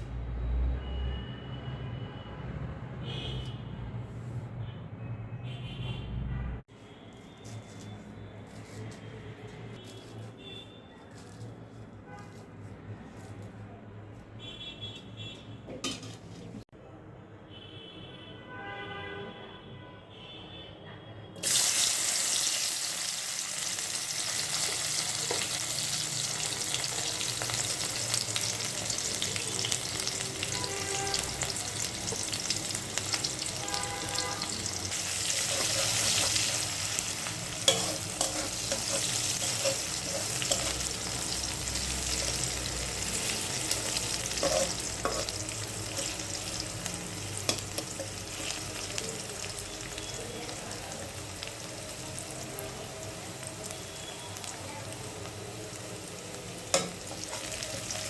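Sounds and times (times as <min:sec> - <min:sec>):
utensil stirring in pan: 0:21.4 - 0:51.4
food sizzling in oil: 0:21.4 - 0:58.0.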